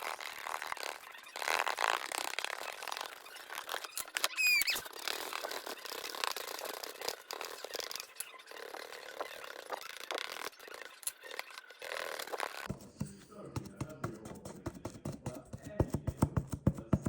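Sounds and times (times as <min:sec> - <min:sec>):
paintbrush scratching on cardboard: 0:00.0 - 0:17.0
brief high squeak: 0:03.8 - 0:04.9.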